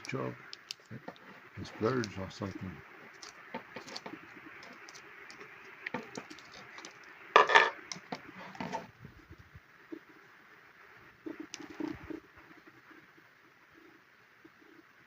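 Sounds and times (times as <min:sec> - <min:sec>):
clattering: 0:07.4 - 0:07.8.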